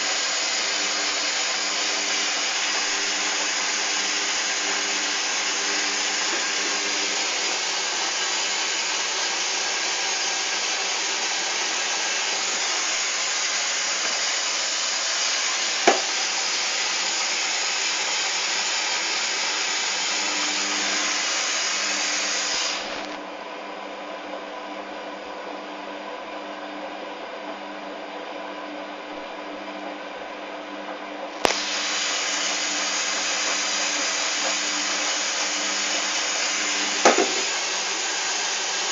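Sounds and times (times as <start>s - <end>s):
washing machine low hum: 0.0s - 18.2s
water rushing in washing machine: 0.0s - 23.2s, 31.6s - 38.9s.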